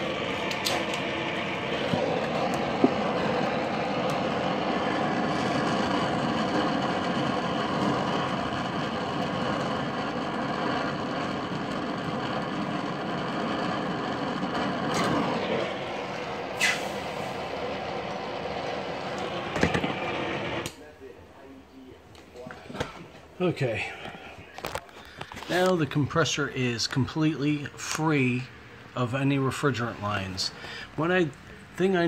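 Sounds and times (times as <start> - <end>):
brazing torch flame: 0.0 - 20.9
short high squeak: 16.6 - 17.0.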